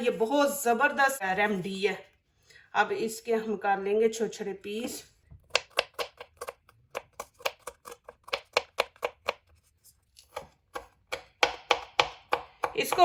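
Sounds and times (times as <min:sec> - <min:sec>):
knife chopping garlic: 0:05.4 - 0:13.0.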